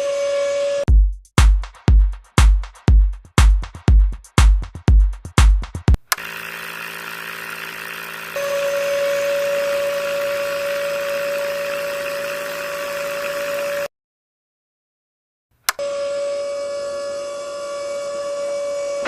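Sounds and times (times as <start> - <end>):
small motor running: 6.0 - 13.9.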